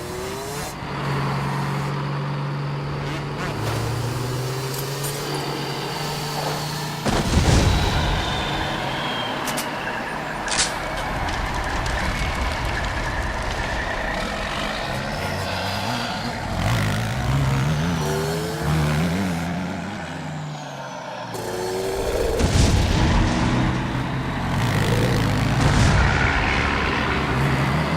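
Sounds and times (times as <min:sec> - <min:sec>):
truck and car engines revving: 0:00.0 - 0:27.9
loud hit: 0:25.5 - 0:27.0.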